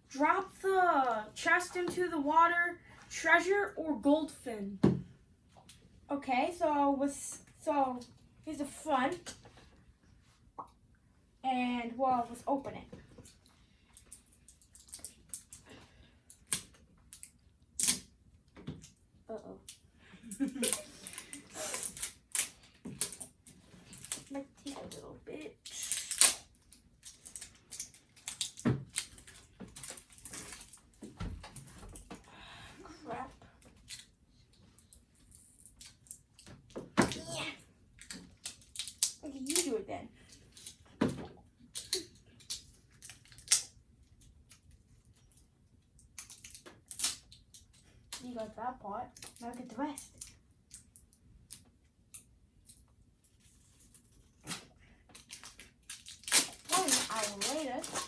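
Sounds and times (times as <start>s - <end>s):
plastic and cardboard crinkling: 25.7s - 32.1s, 53.3s - 58.0s
plastic packaging crackling: 55.2s - 58.0s.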